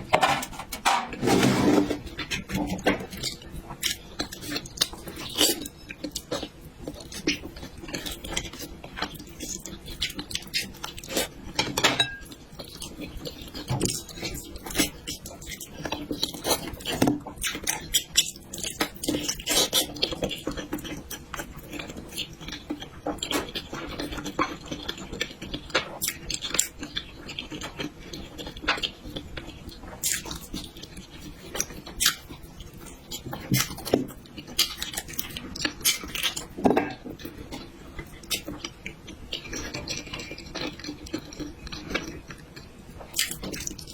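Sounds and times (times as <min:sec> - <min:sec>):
cutlery scraping a dish: 0:00.0 - 0:03.1, 0:11.6 - 0:12.3
chewing: 0:01.5 - 0:43.9.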